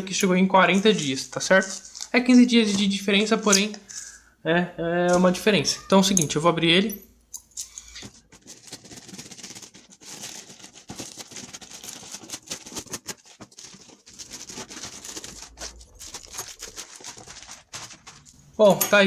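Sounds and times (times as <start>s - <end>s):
packaging crinkling and rustling: 0.7s - 3.5s, 7.7s - 18.8s.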